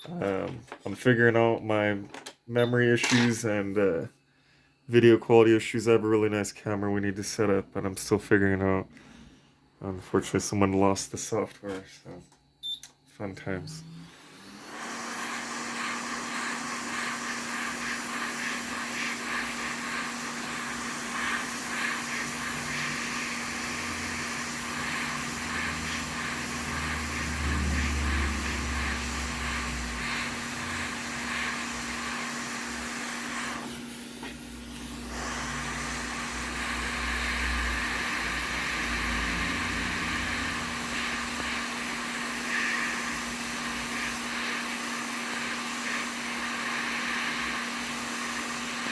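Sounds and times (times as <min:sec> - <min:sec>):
hot-air fan blowing: 0:13.2 - 0:48.9.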